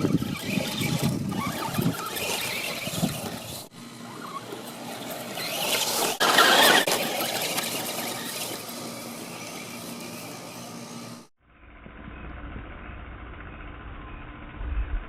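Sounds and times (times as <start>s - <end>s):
tyres on dirt and gravel: 0.0s - 11.3s.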